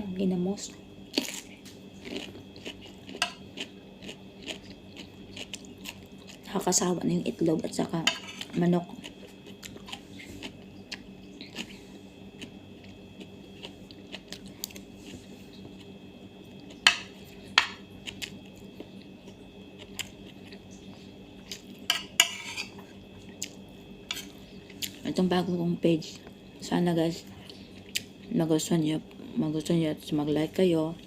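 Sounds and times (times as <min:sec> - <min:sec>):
steady low hum: 0:00.0 - 0:31.0
utensils clinking against plate: 0:21.9 - 0:22.9.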